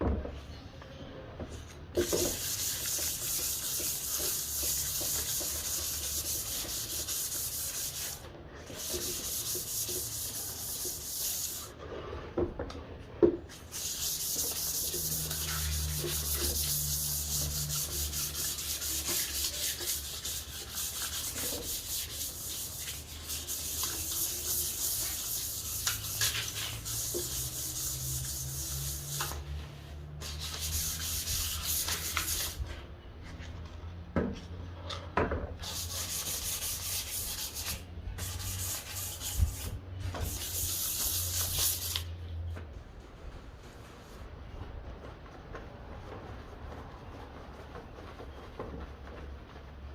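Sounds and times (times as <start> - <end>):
sandpaper rubbing on wood: 2.0 - 11.8, 13.5 - 32.6, 35.6 - 42.1.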